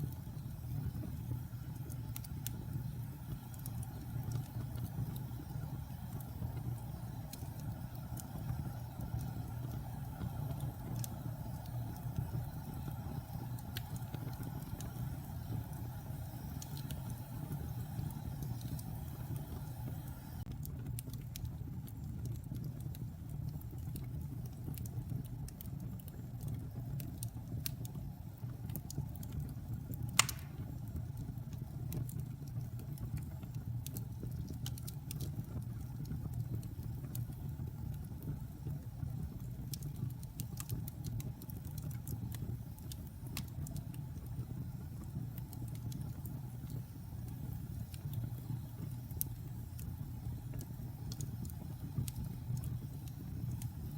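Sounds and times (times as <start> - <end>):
fire rumbling and crackling: 0.0 - 53.9
sharp fire pop: 30.2 - 30.8.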